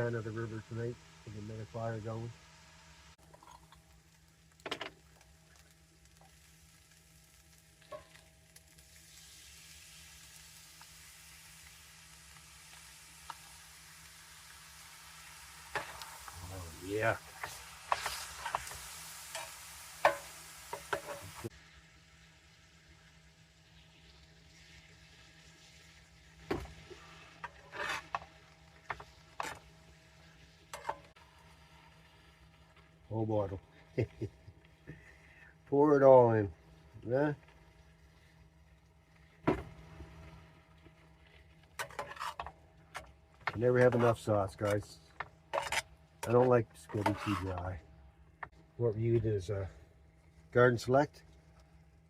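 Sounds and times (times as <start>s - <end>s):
vegetables sizzling in a pan: 0.0s - 52.0s
rasping scrape: 17.3s - 19.5s, 27.4s - 28.2s, 41.8s - 42.5s, 45.5s - 47.8s.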